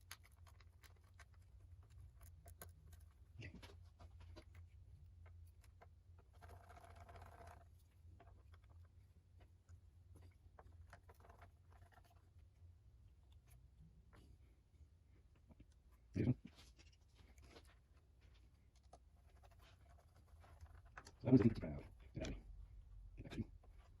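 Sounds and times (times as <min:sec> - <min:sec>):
faint clicks of small parts: 0:00.0 - 0:12.5.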